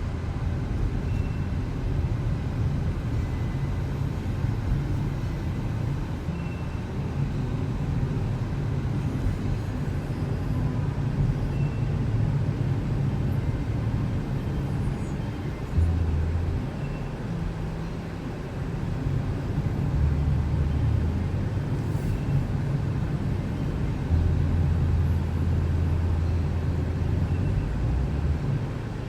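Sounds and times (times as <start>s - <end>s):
car engine and road noise: 0.0s - 29.0s.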